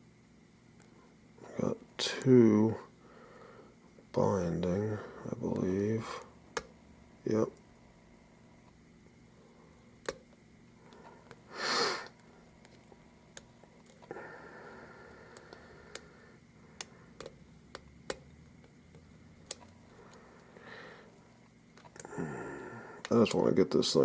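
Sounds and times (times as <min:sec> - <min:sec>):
short breathy hiss: 0:11.5 - 0:12.2.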